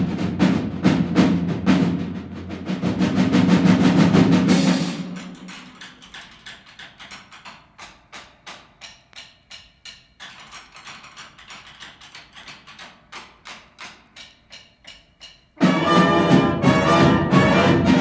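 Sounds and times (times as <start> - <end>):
marching band with brass: 0.0 - 5.2, 15.6 - 18.0
drum stick clicks: 4.9 - 15.6.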